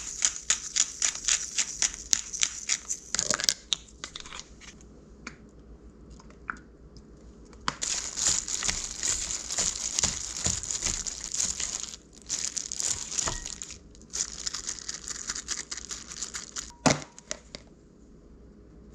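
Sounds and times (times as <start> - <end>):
packaging crinkling: 7.8 - 16.7.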